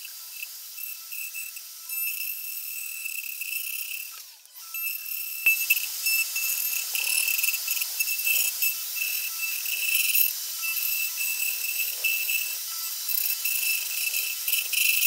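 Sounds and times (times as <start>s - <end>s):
router cutting wood: 0.0s - 15.0s.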